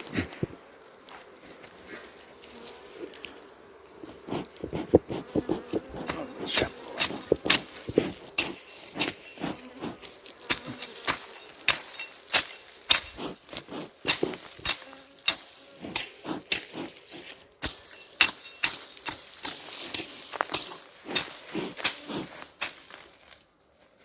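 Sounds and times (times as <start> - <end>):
machete chopping grass: 4.0 - 23.1.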